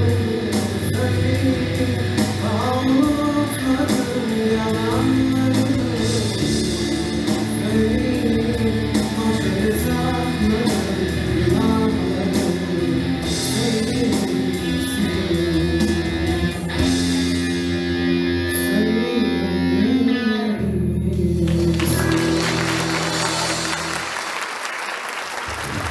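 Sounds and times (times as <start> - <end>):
orchestra with guitars and bass: 0.0 - 24.5
audience applause: 21.5 - 25.9.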